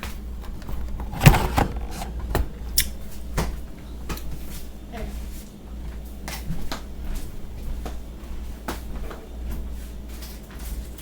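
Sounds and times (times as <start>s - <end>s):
kitchen items knocking: 0.4s - 2.7s.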